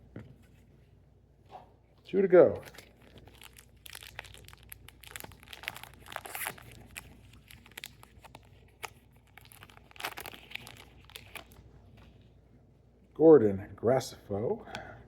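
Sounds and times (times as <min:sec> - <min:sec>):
wrapper tearing and crinkling: 0:02.6 - 0:11.6.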